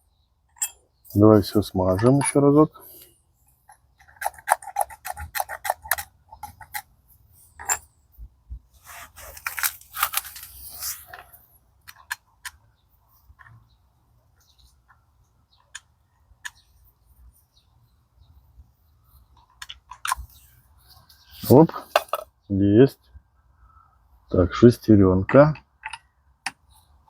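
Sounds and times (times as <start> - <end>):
light metallic clinks: 0.5 - 0.8
parts scraping and rubbing: 0.6 - 13.7, 19.1 - 22.3
metal parts clicking: 3.7 - 6.9, 7.6 - 7.9.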